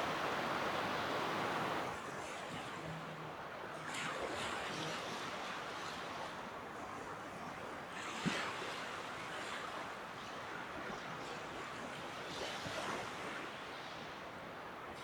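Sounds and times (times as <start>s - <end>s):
ocean waves washing on beach: 0.0s - 2.7s.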